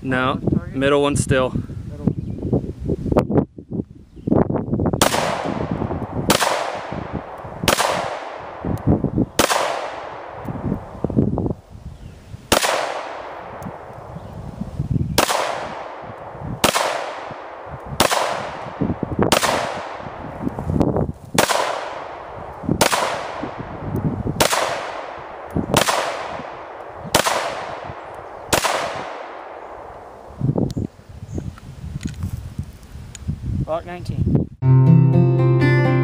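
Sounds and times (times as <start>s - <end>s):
pistol shots with echo: 5.0s - 10.6s, 12.5s - 14.1s, 15.2s - 20.4s, 21.4s - 23.8s, 24.4s - 30.1s.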